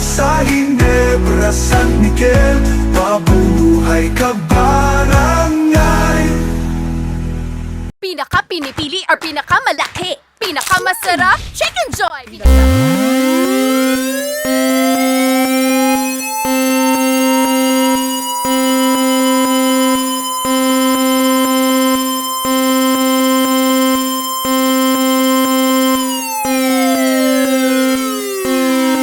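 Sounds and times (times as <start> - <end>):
gliding high alert tone: 12.5 - 29.0
low buzzing drone: 12.5 - 29.0.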